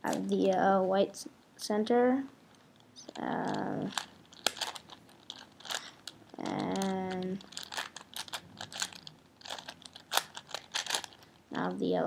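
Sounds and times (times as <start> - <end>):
puzzle cube clicking: 3.0 - 11.2.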